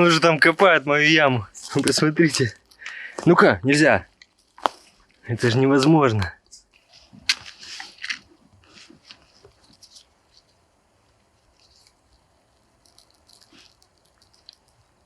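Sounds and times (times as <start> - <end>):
faint scratching and rustling: 0.0 - 15.0.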